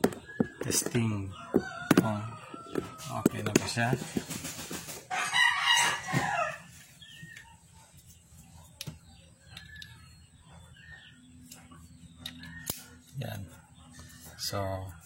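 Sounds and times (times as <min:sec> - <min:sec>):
rooster crowing: 0:01.4 - 0:03.4, 0:05.1 - 0:06.8.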